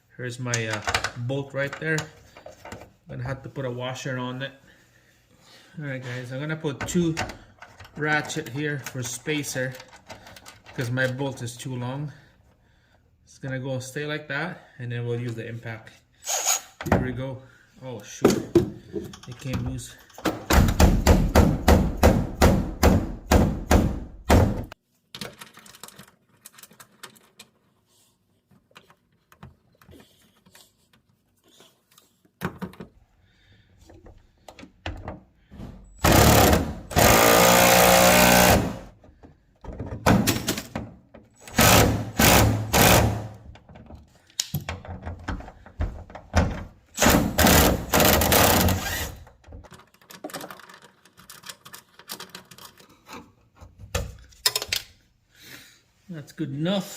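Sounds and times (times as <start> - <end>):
impact wrench hammering: 20.4 - 24.8, 36.0 - 38.9, 41.4 - 43.4, 47.0 - 49.1.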